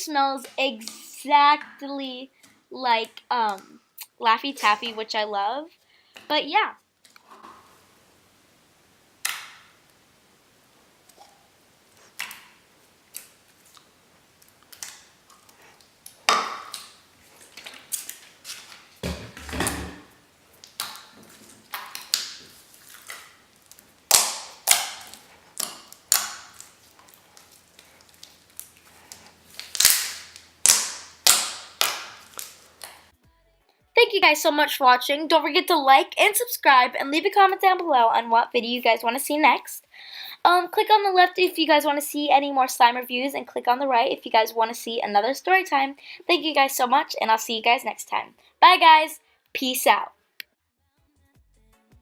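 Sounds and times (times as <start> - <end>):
slime popping and clicking: 16.0 - 18.3, 20.6 - 33.1.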